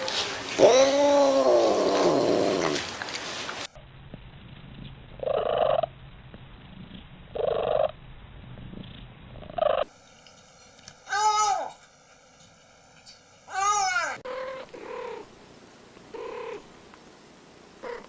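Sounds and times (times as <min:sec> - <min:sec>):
cat purring: 0:04.4 - 0:09.9, 0:14.3 - 0:15.3, 0:16.1 - 0:16.7
cat meowing: 0:13.5 - 0:15.2.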